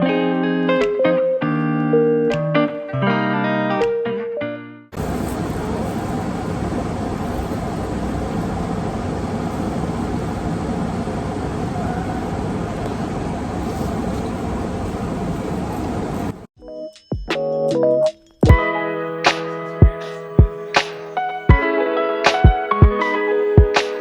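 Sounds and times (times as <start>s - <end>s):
music: 0.0s - 4.9s, 16.6s - 24.0s.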